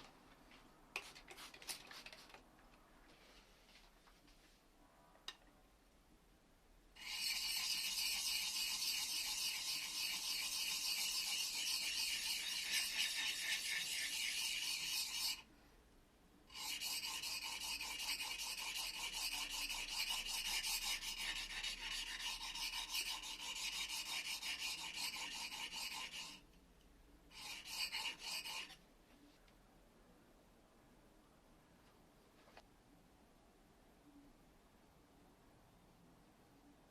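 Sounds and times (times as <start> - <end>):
blade scraping on sharpening stone: 7.0 - 15.4, 16.5 - 26.4, 27.3 - 28.8.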